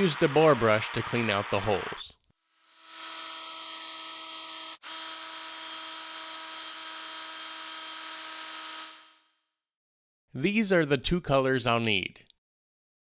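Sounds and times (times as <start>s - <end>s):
electric drill motor whine: 0.0s - 9.4s.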